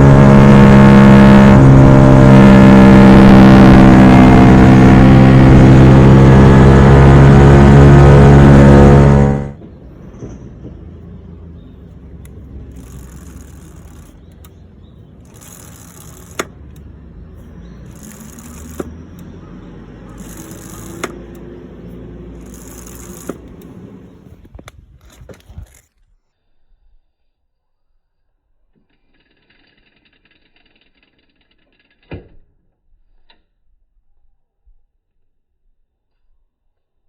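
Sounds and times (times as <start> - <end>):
brake scraping and clicking: 7.7 - 26.0.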